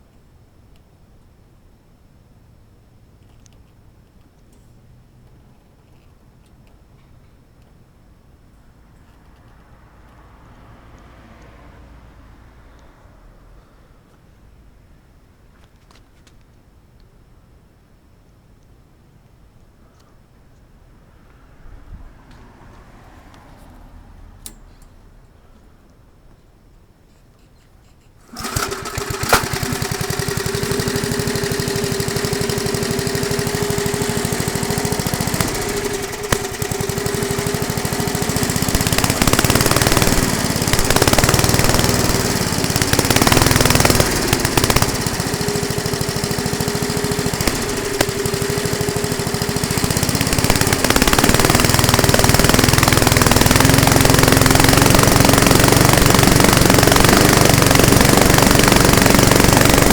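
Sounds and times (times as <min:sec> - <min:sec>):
lawn mower engine running: 0:28.2 - 0:59.9.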